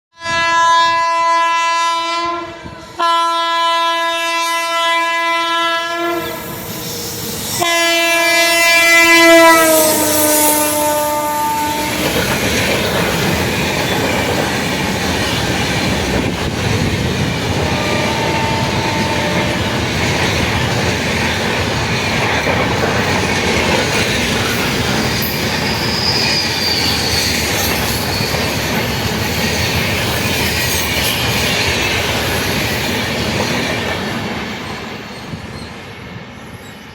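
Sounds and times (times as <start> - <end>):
locomotive horn blasts: 0.2 - 6.6, 7.6 - 12.1, 17.6 - 19.8
train wheels clickety-clack: 11.5 - 36.9
wheel squeal: 25.1 - 29.1.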